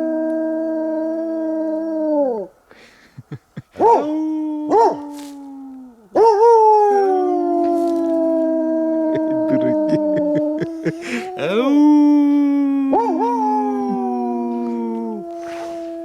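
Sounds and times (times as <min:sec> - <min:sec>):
hound howling and yelping: 0:03.7 - 0:11.5, 0:12.3 - 0:16.0.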